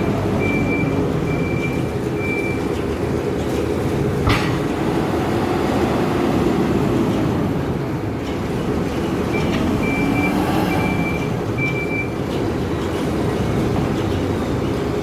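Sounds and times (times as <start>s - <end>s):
backhoe diesel engine running: 0.0s - 15.0s
reversing alarm beeps: 0.4s - 2.7s, 9.3s - 12.2s.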